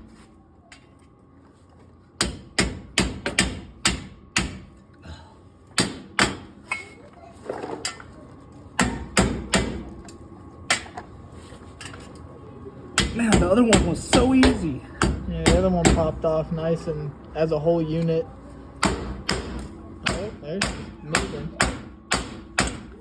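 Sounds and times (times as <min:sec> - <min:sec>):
hammer striking metal chisel: 0:02.2 - 0:04.7, 0:18.8 - 0:22.9.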